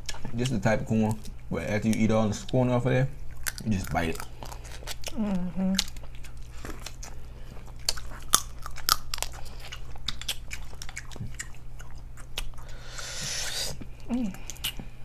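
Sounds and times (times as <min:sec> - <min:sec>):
crunchy chewing of corn: 0:03.3 - 0:05.2, 0:05.8 - 0:15.0.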